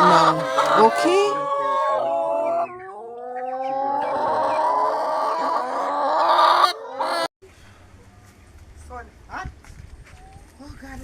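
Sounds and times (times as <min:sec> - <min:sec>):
chickens calling: 0:00.0 - 0:07.3.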